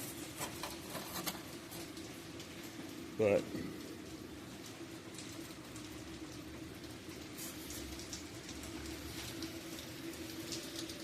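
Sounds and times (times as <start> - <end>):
light rain falling: 0.0 - 11.0.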